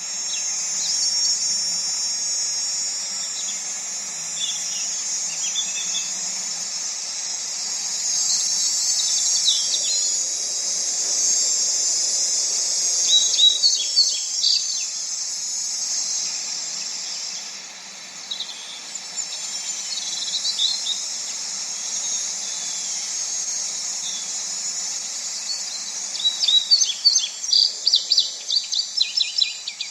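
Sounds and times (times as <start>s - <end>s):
high-pitched insect drone: 0.0s - 29.9s
bird chirps: 25.3s - 29.9s.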